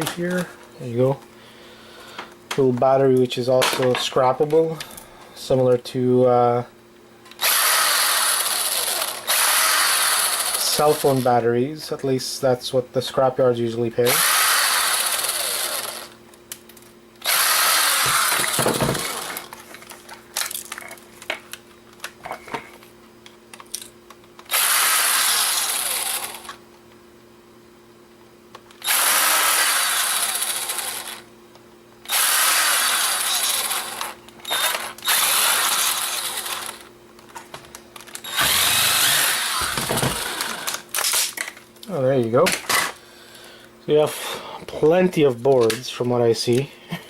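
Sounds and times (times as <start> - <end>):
electric screwdriver running: 7.4 - 11.2, 14.1 - 16.2, 17.2 - 19.6, 24.5 - 26.6, 28.8 - 31.2, 32.1 - 36.9, 38.2 - 41.2.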